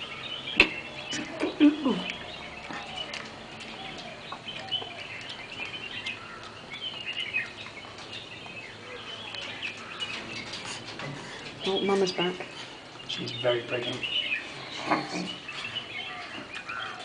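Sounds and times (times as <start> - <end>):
birds chirping and twittering: 0.0 - 17.0.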